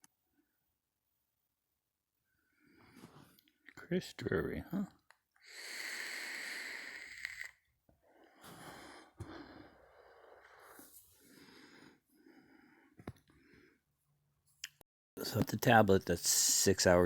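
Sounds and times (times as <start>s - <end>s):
person breathing: 5.4s - 13.9s.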